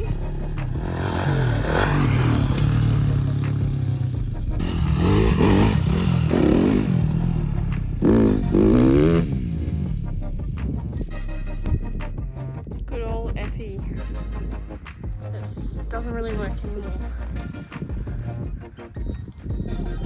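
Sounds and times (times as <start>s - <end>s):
vehicle engine revving: 0.0s - 11.1s.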